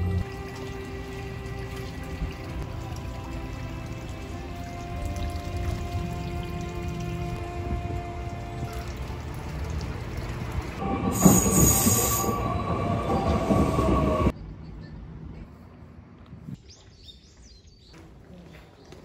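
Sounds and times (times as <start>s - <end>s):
train rumbling: 0.0s - 15.6s
wheels squealing on rails: 10.8s - 14.3s.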